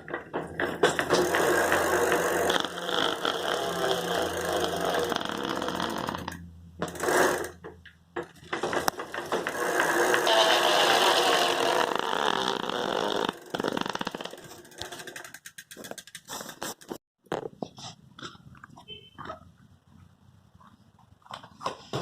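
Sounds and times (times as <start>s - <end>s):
bicycle wheel clicking against spokes: 0.1s - 17.0s.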